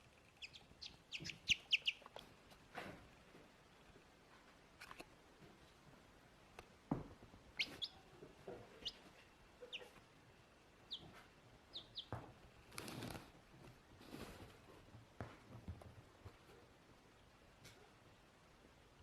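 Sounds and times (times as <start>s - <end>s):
baby chick peeping: 0.0s - 2.6s, 7.5s - 13.3s.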